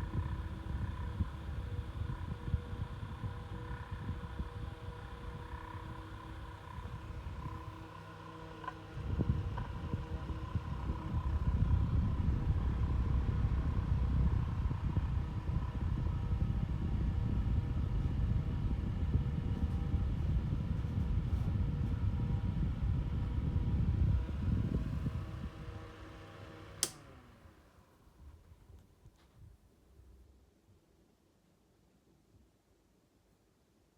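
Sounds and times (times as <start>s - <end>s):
low rumble of moving air: 0.0s - 7.8s, 9.0s - 25.8s
desk fan motor hum: 0.0s - 28.7s
fan switch click: 26.7s - 27.2s.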